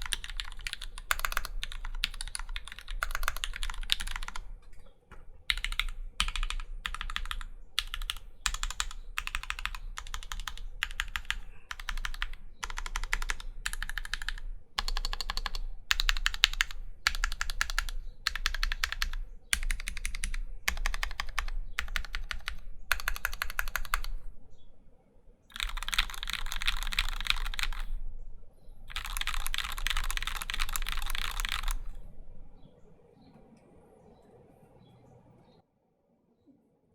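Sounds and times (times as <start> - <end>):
mechanical keyboard typing: 0.0 - 24.2, 25.5 - 28.0, 28.9 - 32.1.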